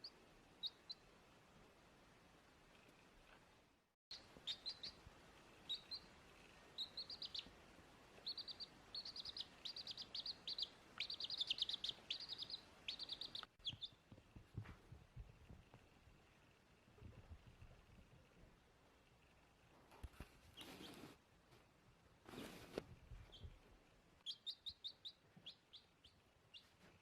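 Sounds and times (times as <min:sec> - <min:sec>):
baby chick peeping: 0:00.0 - 0:01.2, 0:04.1 - 0:14.7, 0:19.2 - 0:21.2, 0:22.3 - 0:23.6, 0:24.2 - 0:27.0.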